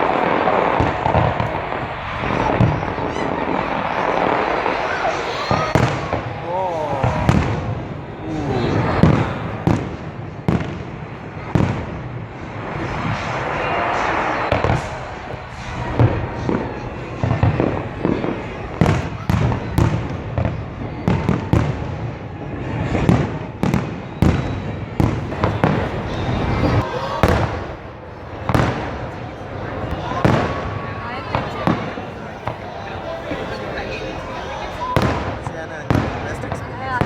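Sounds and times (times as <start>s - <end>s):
steady rushing noise: 0.0s - 21.1s
fireworks bursting with bangs: 0.0s - 37.0s.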